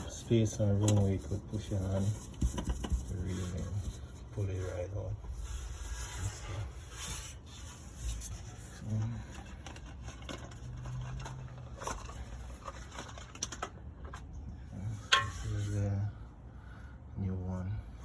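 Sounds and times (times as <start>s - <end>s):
plastic parts clicking and scraping: 8.6s - 14.3s.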